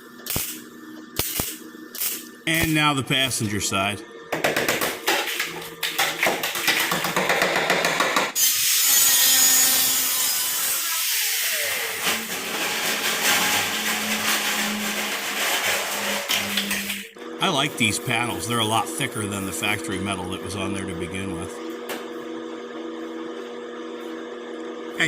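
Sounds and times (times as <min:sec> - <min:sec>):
buzzing power tool: 0:04.2 - 0:25.0
high hiss of metal cutting: 0:08.4 - 0:11.6.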